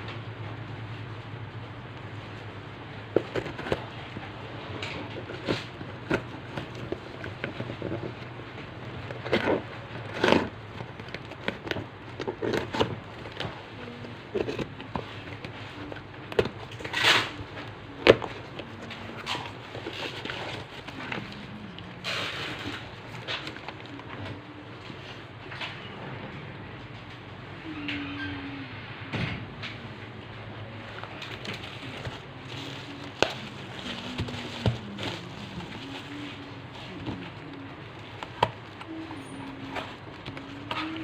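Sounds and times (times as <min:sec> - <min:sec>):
packaging crinkling: 0:02.2 - 0:24.5, 0:30.7 - 0:41.0.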